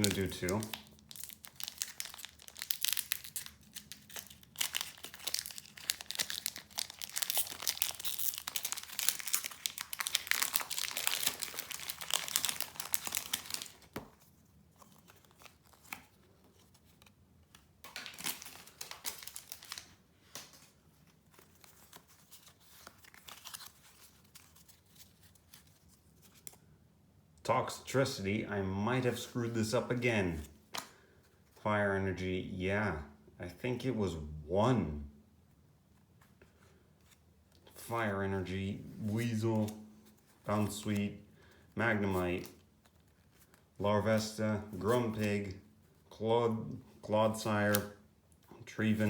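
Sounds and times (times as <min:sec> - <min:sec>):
foil wrapper tearing and crinkling: 0:00.0 - 0:14.1, 0:17.9 - 0:20.5.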